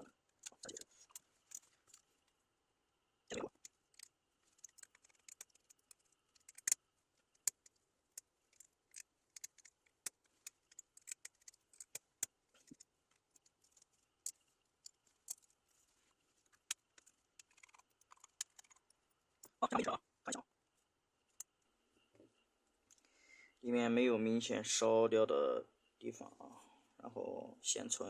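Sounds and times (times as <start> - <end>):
screwdriver and metal parts clicking: 3.6 - 15.5, 16.5 - 19.5.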